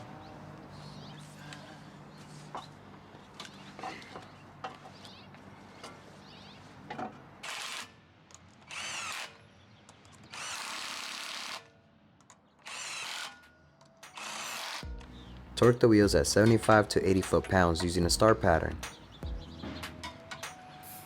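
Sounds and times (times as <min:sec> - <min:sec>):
power tool whirring: 0:07.4 - 0:08.0, 0:08.6 - 0:09.5, 0:10.1 - 0:11.7, 0:12.6 - 0:13.5, 0:14.1 - 0:14.9.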